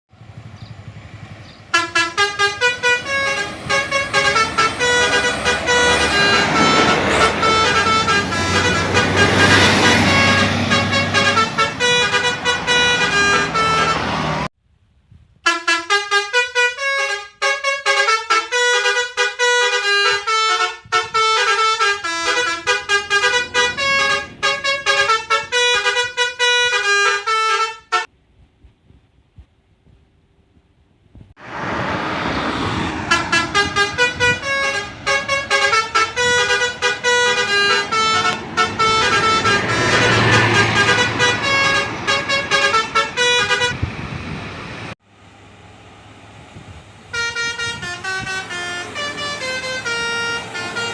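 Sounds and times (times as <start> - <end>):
musical bus horn melody: 1.7 - 14.5, 15.4 - 28.1, 32.3 - 43.9, 47.1 - 50.9.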